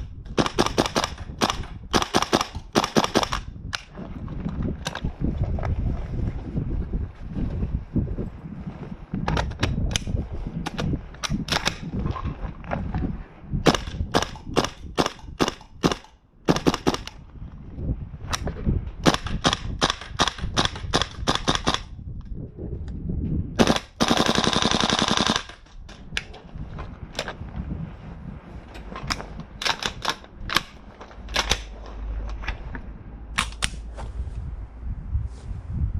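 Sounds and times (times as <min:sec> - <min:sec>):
airsoft rifle shots: 0:00.0 - 0:03.5, 0:13.6 - 0:17.2, 0:19.0 - 0:22.0, 0:23.6 - 0:25.6
bolt cycling clack: 0:29.1 - 0:31.8, 0:33.4 - 0:33.8.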